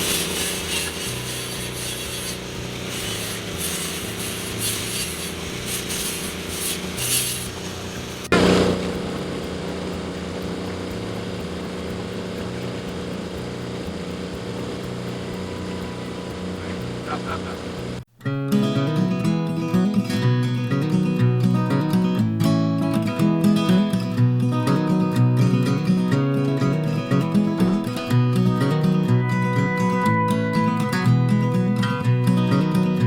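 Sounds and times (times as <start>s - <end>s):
rasping scraping strokes: 0.0s - 18.0s, 23.0s - 33.0s
steady machine hum: 0.0s - 18.2s.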